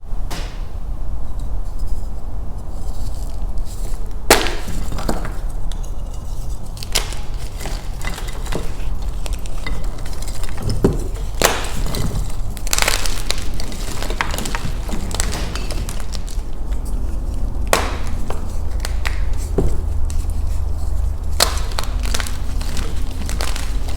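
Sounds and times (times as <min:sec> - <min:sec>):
chalk block crushed by hand: 0:04.3 - 0:05.5, 0:06.8 - 0:20.4, 0:21.4 - 0:23.9.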